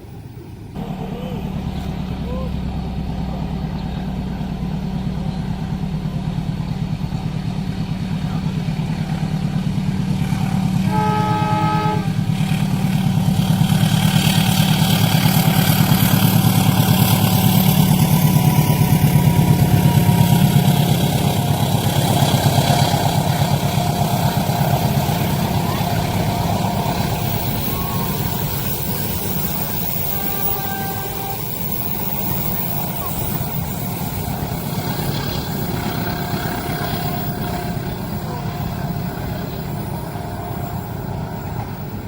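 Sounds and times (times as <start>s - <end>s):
train rushing past on rails: 0.0s - 42.0s
engine droning: 0.2s - 42.0s
train horn: 10.4s - 42.0s.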